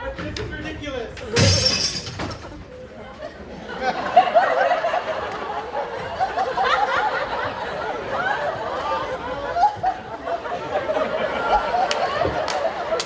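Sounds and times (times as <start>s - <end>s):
audience laughing: 2.7s - 13.0s.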